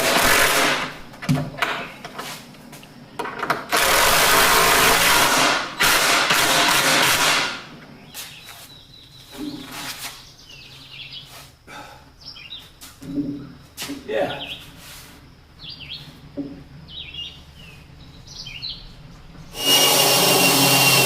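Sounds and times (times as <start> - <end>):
power tool running: 0.0 - 0.9, 3.7 - 7.6, 19.5 - 21.0
faint bird chirps: 8.0 - 13.6.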